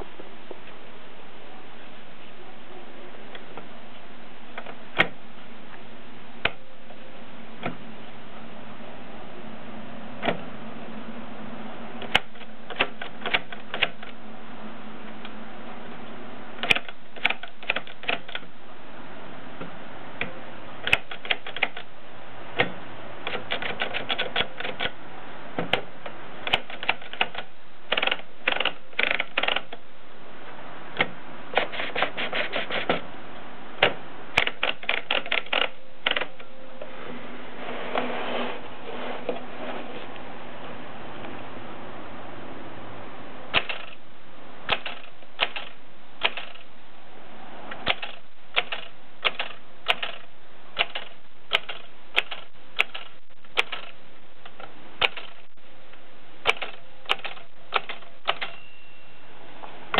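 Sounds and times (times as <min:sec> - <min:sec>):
soft rasping sound: 0:36.8 - 0:40.3.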